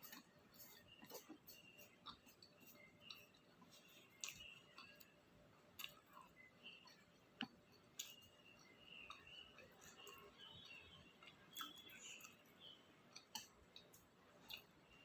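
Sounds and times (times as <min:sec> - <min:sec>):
person chewing food: 0:00.0 - 0:15.0
wet mouth clicks and smacks: 0:13.2 - 0:14.8.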